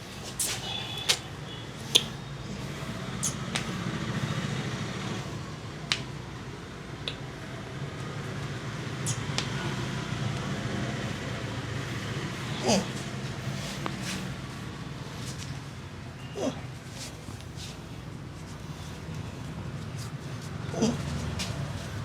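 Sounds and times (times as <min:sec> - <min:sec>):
hands snapping and cracking: 0:05.9 - 0:06.1.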